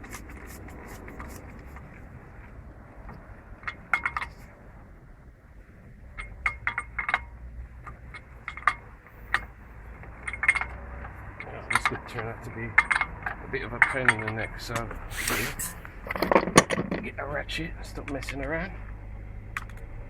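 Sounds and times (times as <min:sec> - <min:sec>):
metal clicks of nut and tool: 0:10.3 - 0:10.8.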